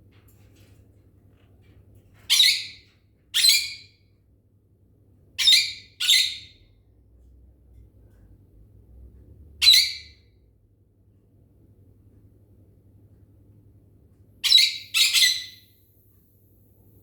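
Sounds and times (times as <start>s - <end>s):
bird squawking: 14.5s - 15.7s.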